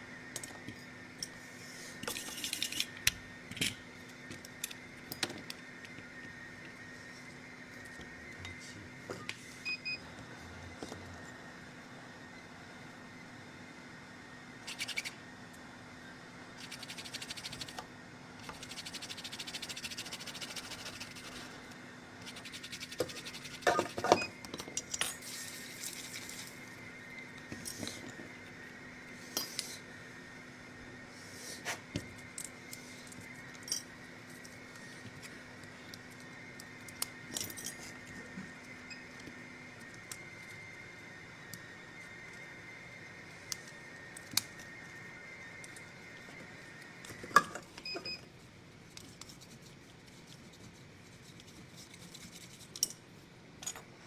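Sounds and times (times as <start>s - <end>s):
faint electrical hum: 0.0s - 54.0s
small tools clicking and scraping: 51.2s - 53.0s.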